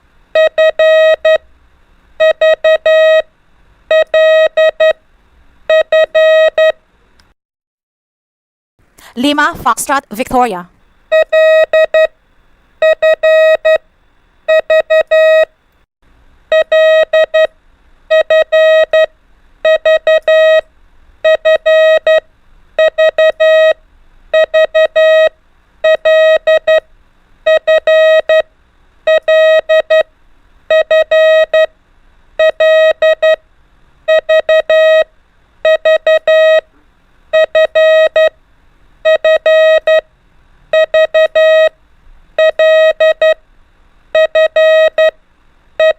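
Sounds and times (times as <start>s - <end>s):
morse code beeps: 0.4s - 1.4s, 2.2s - 3.2s, 3.9s - 5.0s, 5.7s - 6.8s, 10.2s - 12.1s, 12.8s - 13.8s, 14.5s - 15.5s, 16.5s - 17.5s, 18.1s - 20.6s, 21.2s - 22.2s, 22.8s - 23.8s, 24.4s - 26.8s, 27.5s - 28.4s, 29.1s - 30.1s, 30.7s - 31.7s, 32.4s - 33.4s, 34.1s - 36.6s, 37.4s - 38.3s, 39.0s - 40.0s, 40.7s - 41.7s, 42.4s - 43.4s, 44.2s - 45.2s.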